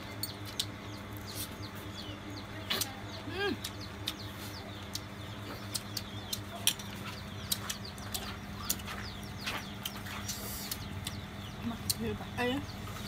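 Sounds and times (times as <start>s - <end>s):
low steady hum: 0.0s - 13.0s
small birds chirping: 0.0s - 13.0s.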